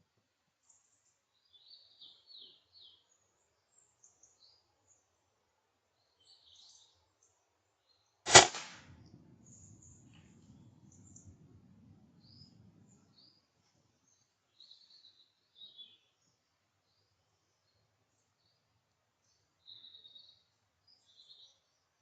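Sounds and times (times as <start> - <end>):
air rifle shot: 8.3 - 9.2
faint bird chirps: 12.2 - 22.0.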